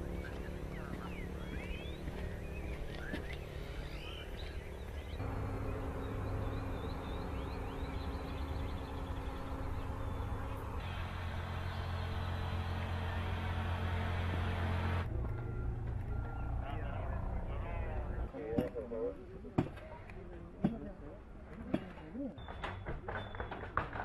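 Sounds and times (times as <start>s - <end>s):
low engine hum: 0.0s - 18.3s
birds chirping: 0.0s - 18.4s.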